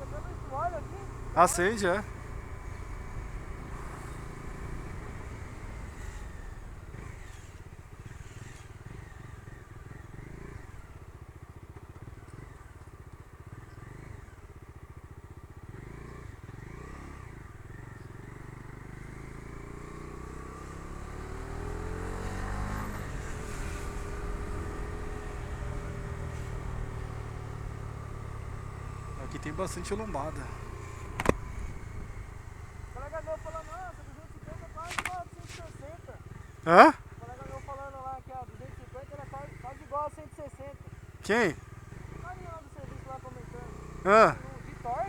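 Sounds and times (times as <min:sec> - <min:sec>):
motorcycle engine running: 0:00.0 - 0:45.0.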